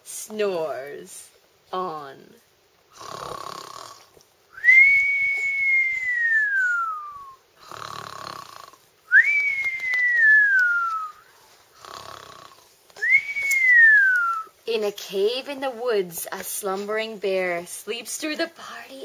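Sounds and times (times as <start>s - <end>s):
person snoring: 2.9s - 4.1s, 7.6s - 8.8s, 11.7s - 12.7s
falling whistle on out-breath: 4.6s - 7.4s, 9.1s - 11.2s, 13.0s - 14.5s.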